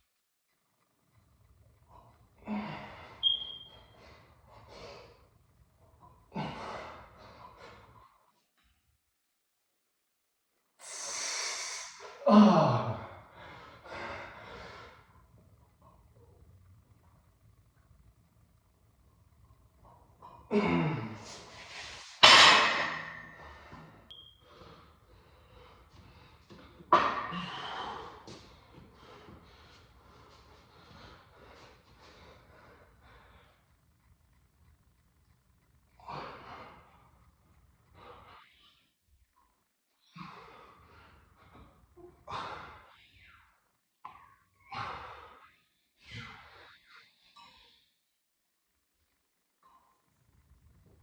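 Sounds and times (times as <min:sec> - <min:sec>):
brief high squeak: 0:03.2 - 0:03.8
man exhaling forcefully: 0:10.8 - 0:12.2.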